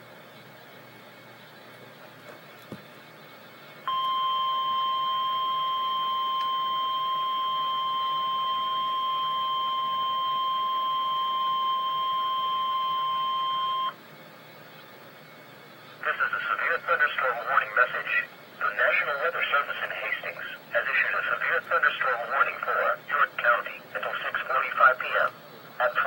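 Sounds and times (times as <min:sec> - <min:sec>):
steady loud alarm tone: 0:03.8 - 0:14.0.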